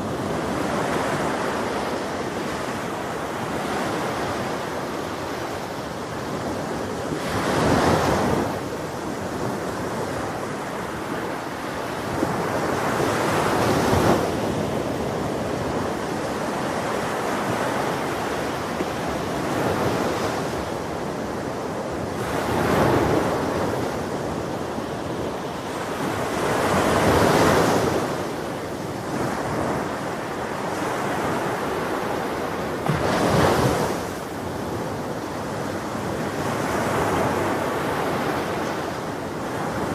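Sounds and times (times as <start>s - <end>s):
ocean waves breaking: 0.0s - 39.9s
wind noise on microphone: 0.0s - 39.9s.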